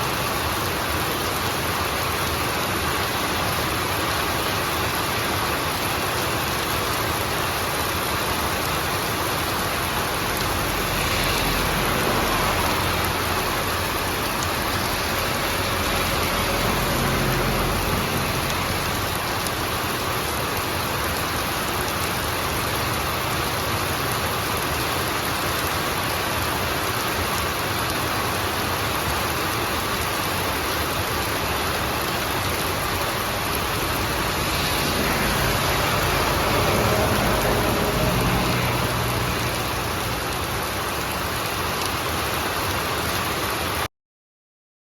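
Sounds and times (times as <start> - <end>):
rain pattering: 0.0 - 43.9.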